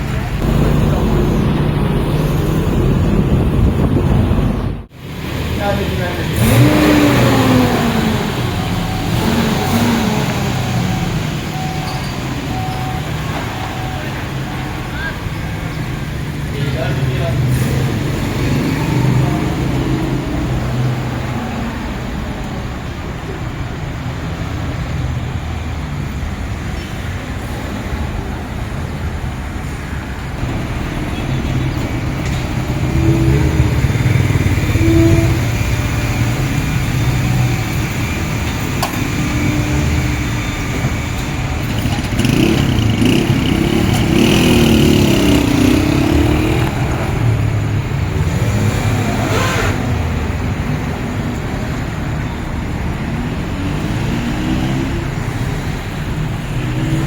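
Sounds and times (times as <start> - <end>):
car engine revving: 0.0 - 12.6, 30.4 - 52.1.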